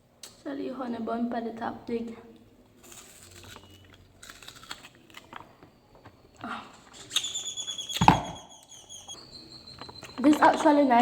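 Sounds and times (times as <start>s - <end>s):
bird chirping: 5.7s - 11.0s.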